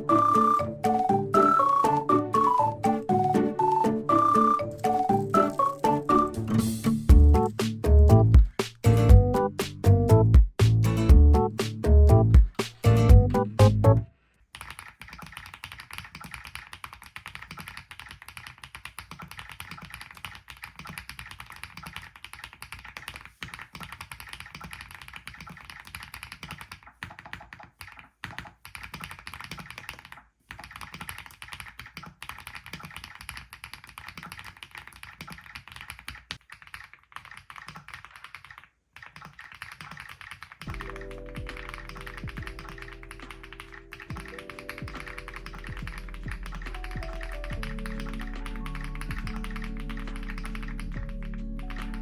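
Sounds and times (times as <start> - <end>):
background music: 0.0 - 14.1, 40.7 - 52.0.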